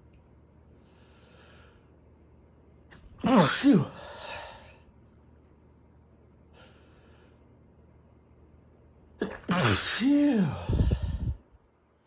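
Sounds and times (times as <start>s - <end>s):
man gasping before sneeze: 9.3s - 11.4s.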